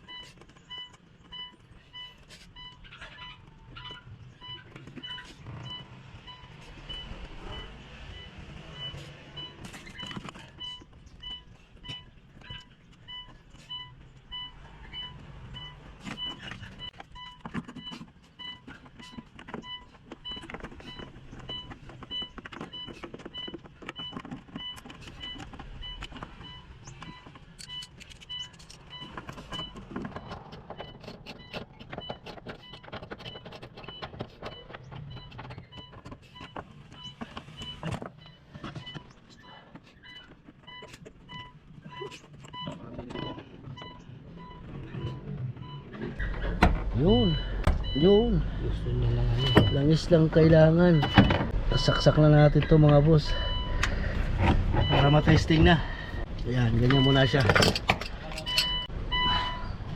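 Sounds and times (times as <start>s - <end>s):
steady electronic beeping: 47.0s - 54.1s, 54.7s - 59.9s
metallic clicks and tool clatter: 56.8s - 58.8s.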